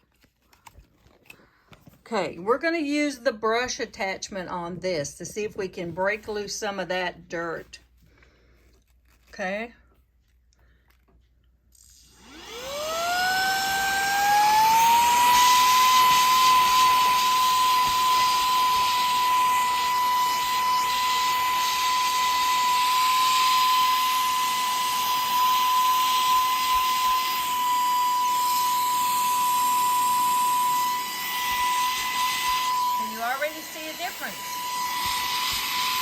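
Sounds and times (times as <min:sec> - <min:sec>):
handheld vacuum cleaner motor whine: 0:11.7 - 0:36.0.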